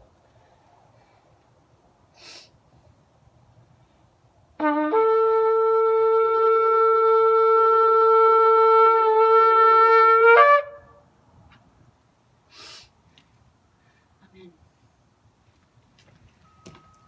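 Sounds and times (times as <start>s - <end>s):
shofar blast: 4.6s - 11.0s.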